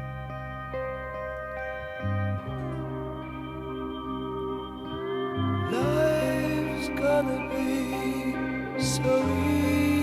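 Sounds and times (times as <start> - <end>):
slow pop song instrumental: 0.0 - 10.0.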